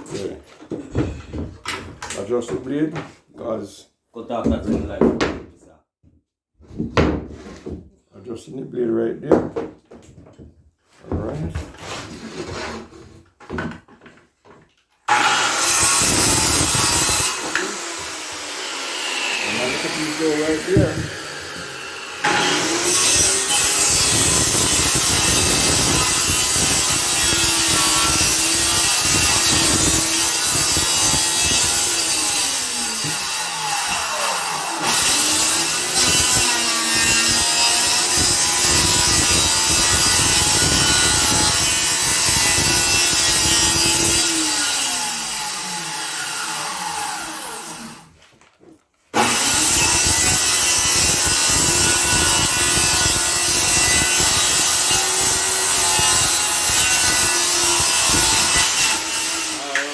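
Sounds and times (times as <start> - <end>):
circular saw cutting plywood: 15.1 - 48.1, 49.2 - 59.9.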